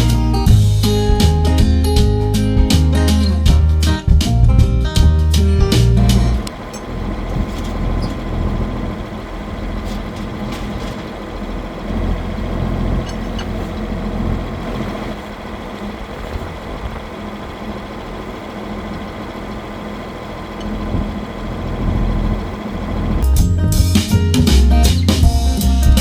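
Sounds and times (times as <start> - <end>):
tractor engine rumbling: 0.0 - 26.0
faint light rattles: 6.0 - 23.2.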